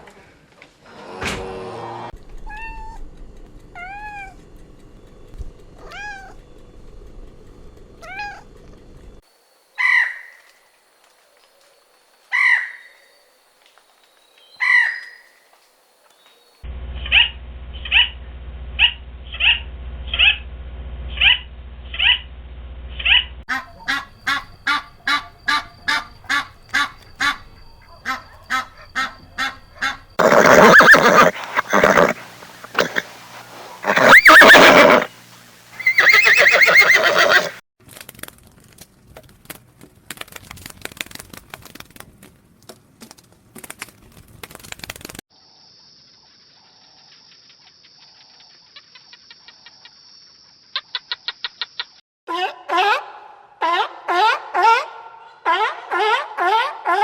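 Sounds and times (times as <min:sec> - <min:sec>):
short repeated animal calls: 0:23.0 - 0:33.1, 0:33.7 - 0:35.1, 0:35.8 - 0:37.6
horse neighing: 0:30.2 - 0:33.2, 0:33.8 - 0:35.1, 0:35.8 - 0:37.6.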